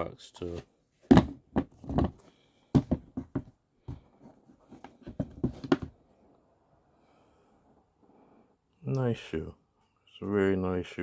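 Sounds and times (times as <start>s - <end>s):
shoe box knocks and scuffs: 1.1s - 6.0s.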